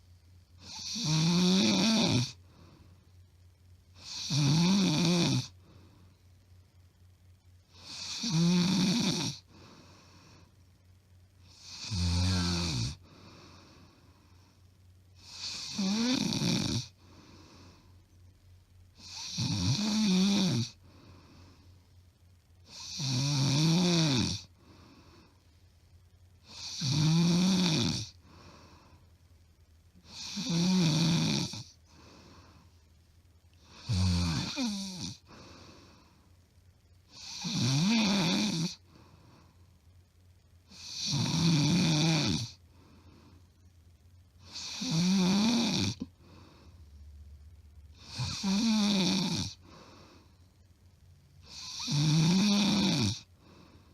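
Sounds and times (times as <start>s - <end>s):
woman snoring loudly: 0.6s - 2.4s, 4.0s - 5.6s, 7.8s - 9.6s, 11.5s - 13.0s, 15.2s - 17.0s, 19.0s - 20.8s, 22.7s - 24.5s, 26.5s - 28.2s, 30.0s - 31.8s, 33.6s - 35.5s, 37.1s - 38.8s, 40.7s - 42.6s, 44.5s - 46.1s, 48.0s - 49.8s, 51.4s - 53.3s
quiet breathing: 1.8s - 4.4s, 5.0s - 8.4s, 9.3s - 19.5s, 20.2s - 23.1s, 24.0s - 26.9s, 27.6s - 53.9s.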